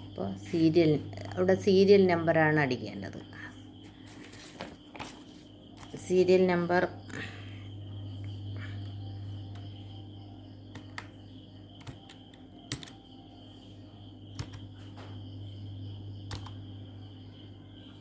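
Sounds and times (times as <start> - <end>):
faint high whine: 0.0 - 18.0
steady low hum: 0.0 - 18.0
keyboard keys clicking: 10.7 - 11.1, 11.8 - 13.0, 14.4 - 14.6, 16.3 - 16.6.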